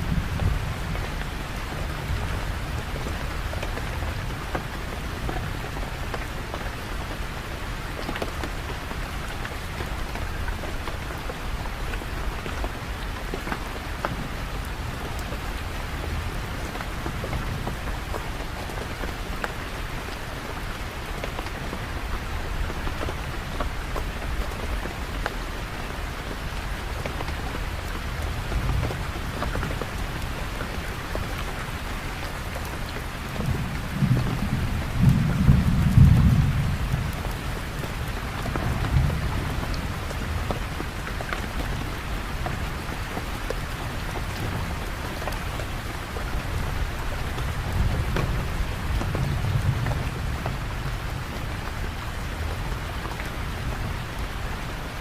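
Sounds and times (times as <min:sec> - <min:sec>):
steady rain falling: 0:00.0 - 0:55.0
thunder rumbling: 0:33.3 - 0:40.7.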